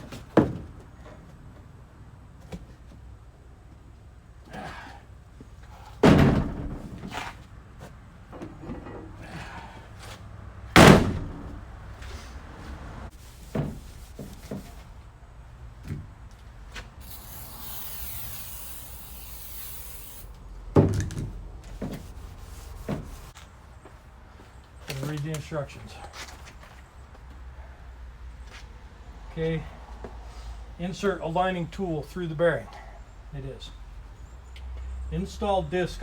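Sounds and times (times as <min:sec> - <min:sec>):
tools knocking and clunking: 0:07.8 - 0:09.6, 0:20.8 - 0:22.1
high hiss: 0:17.0 - 0:20.3.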